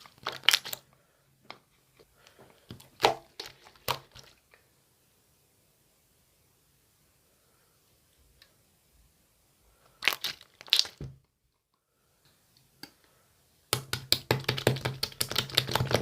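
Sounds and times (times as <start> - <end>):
slime crackling and popping: 0.0 - 0.8, 2.8 - 4.4, 9.9 - 11.2, 13.7 - 16.0.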